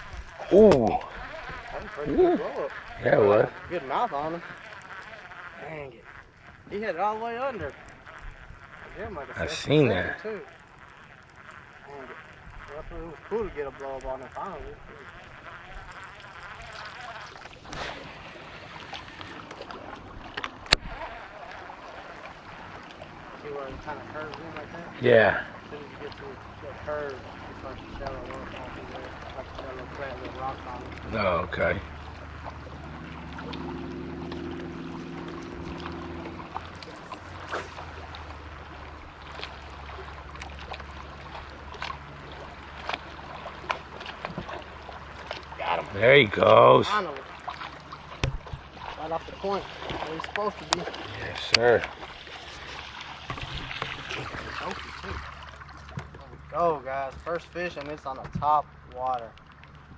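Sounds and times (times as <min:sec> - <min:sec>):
water around a boat: 0:00.0 - 0:59.9
wind: 0:00.0 - 0:59.9.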